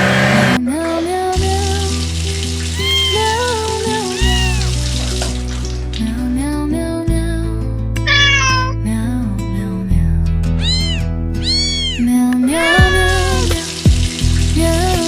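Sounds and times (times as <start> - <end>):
background music: 0.0 - 15.0
cat meowing: 2.8 - 4.8, 8.1 - 8.8, 10.6 - 13.6.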